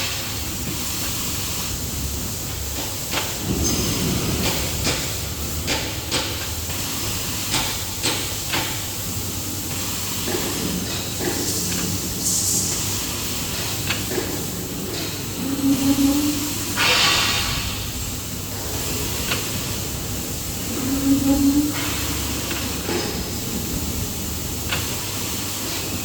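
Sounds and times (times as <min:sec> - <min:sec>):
cutting machine hum and hiss: 0:00.0 - 0:26.0.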